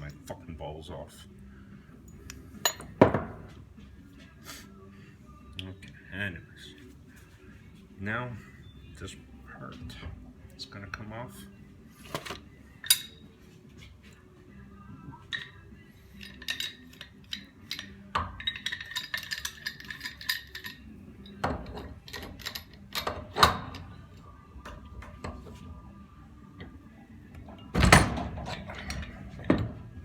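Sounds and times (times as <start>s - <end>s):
metal parts clinking and knocking: 2.6s - 3.5s, 12.1s - 13.3s, 15.3s - 30.0s.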